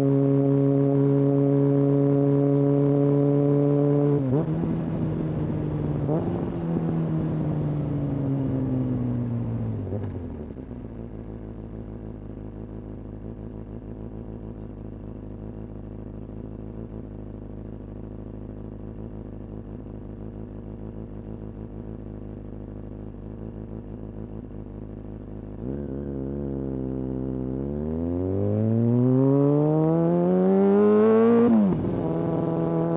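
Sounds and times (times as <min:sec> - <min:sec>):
motorcycle engine revving and idling: 0:00.0 - 0:32.9.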